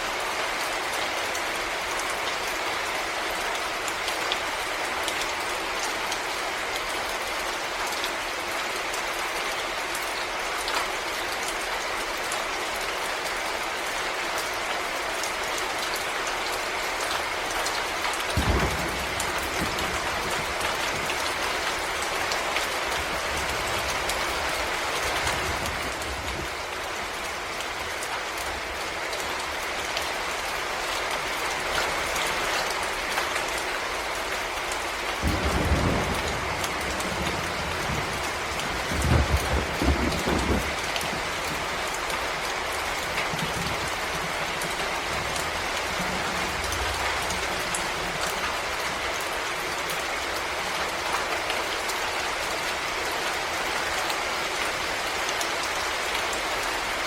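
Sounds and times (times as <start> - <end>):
rain pattering in a forest: 0.0 - 57.0.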